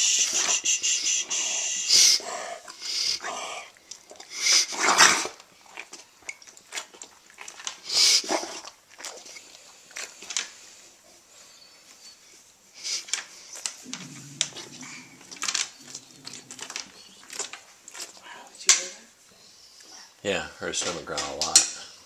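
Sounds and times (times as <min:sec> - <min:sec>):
dog reverse sneezing: 0:00.0 - 0:03.5, 0:04.3 - 0:05.4.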